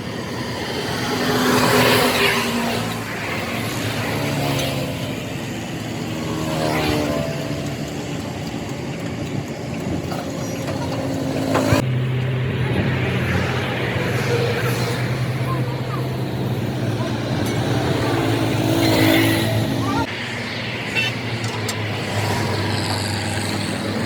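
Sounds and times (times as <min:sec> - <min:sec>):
vehicle engines running: 0:00.0 - 0:24.0
vehicles passing by: 0:00.0 - 0:24.0.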